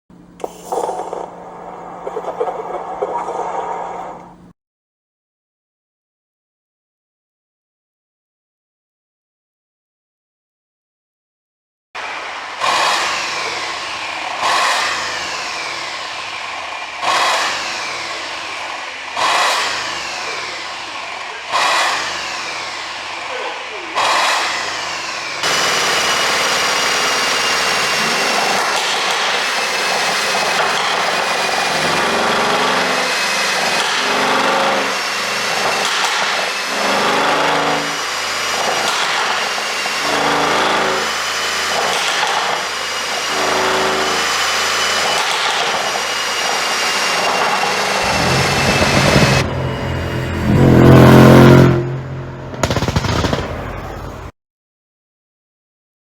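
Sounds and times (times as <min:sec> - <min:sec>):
car engine revving: 0:12.0 - 0:41.7, 0:46.7 - 0:54.3
exhaust crackling and popping: 0:48.0 - 0:49.5.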